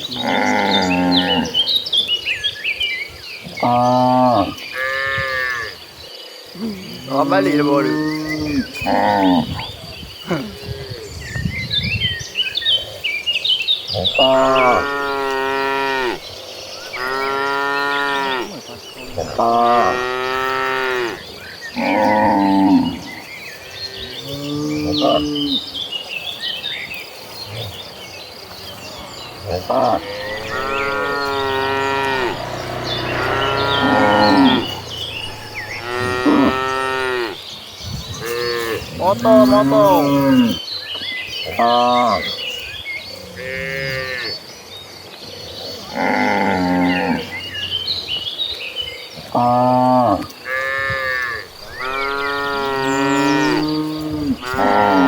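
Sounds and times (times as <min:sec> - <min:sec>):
cattle mooing: 0:00.2 - 0:01.7, 0:14.0 - 0:16.2, 0:16.8 - 0:23.1, 0:29.2 - 0:37.4, 0:49.4 - 0:55.0.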